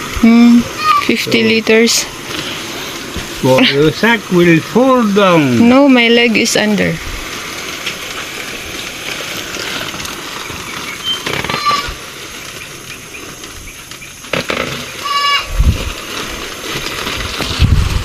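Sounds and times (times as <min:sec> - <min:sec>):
high animal calls: 0:00.5 - 0:01.8, 0:10.3 - 0:15.6
corn kernels pouring into container: 0:14.4 - 0:18.0.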